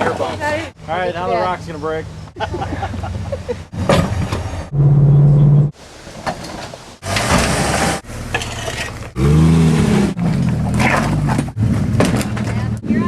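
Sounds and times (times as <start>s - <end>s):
off-road vehicle engines revving: 0.0s - 13.0s.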